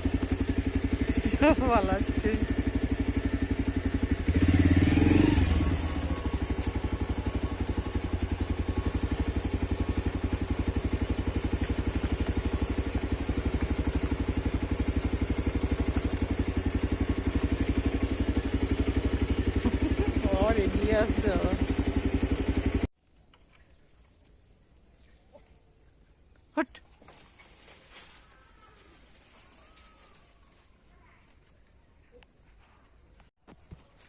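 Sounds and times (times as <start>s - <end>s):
engine running: 0.0s - 22.9s.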